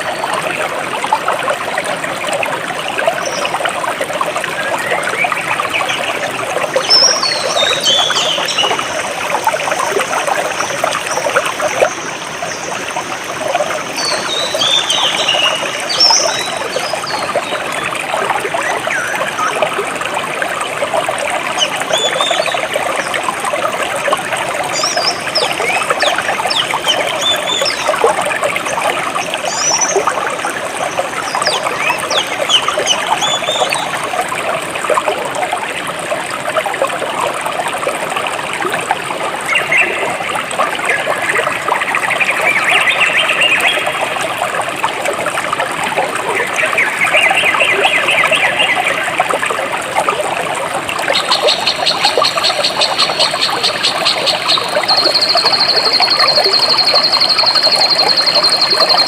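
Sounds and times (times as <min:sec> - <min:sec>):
stream trickling and splashing: 0:00.0 - 0:59.0
high bird chirps: 0:51.2 - 0:59.0.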